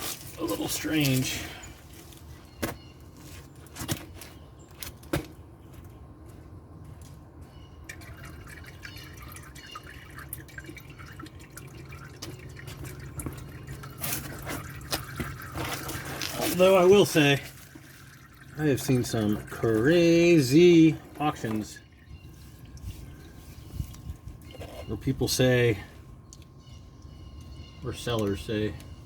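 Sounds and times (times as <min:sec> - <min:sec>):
oil dripping into a pan: 0:07.8 - 0:16.0, 0:17.0 - 0:19.8
steady low hum: 0:16.3 - 0:29.0.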